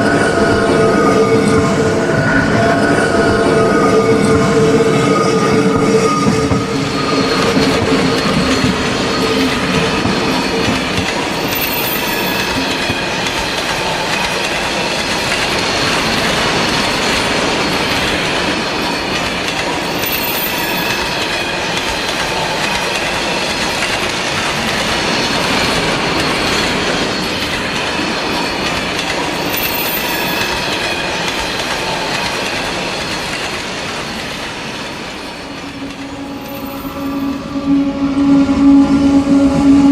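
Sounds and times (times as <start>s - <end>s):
rail clatter: 0.0s - 39.4s
train rolling on track: 0.0s - 39.9s
wheel squeal: 2.2s - 14.4s.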